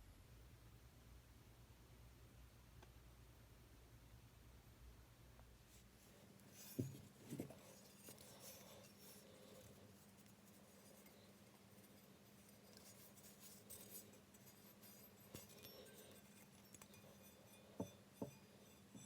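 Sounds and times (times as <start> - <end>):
faint steady hum: 0.0 - 19.0
light scratching and ticking: 5.7 - 19.0.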